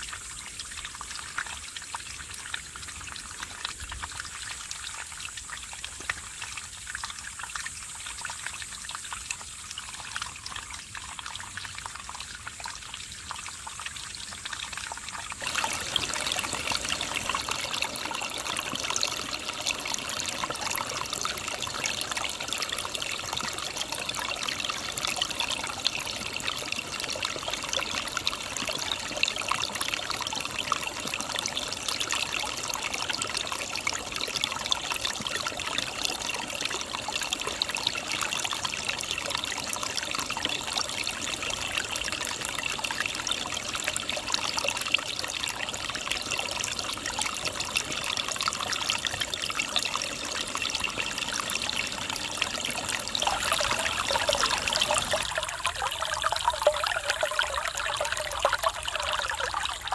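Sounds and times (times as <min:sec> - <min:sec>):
stream trickling over rocks: 0:00.0 - 0:59.9.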